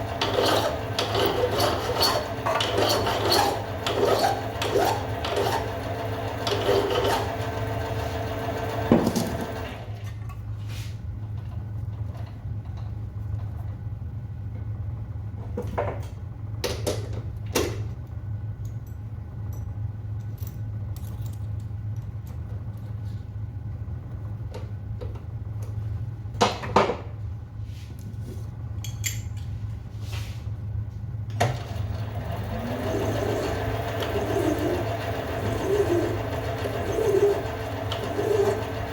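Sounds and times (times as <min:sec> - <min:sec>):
file rasping on metal: 0:00.2 - 0:05.7, 0:33.0 - 0:38.9
steady low hum: 0:32.6 - 0:38.9.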